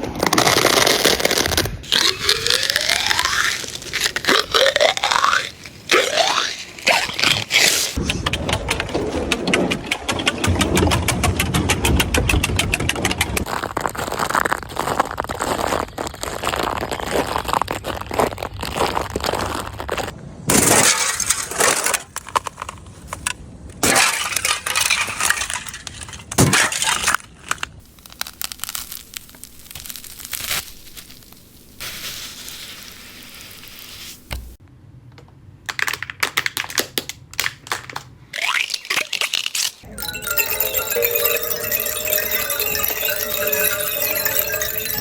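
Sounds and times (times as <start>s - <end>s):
brittle material cracking and clinking: 0.3s - 7.4s, 27.0s - 31.4s.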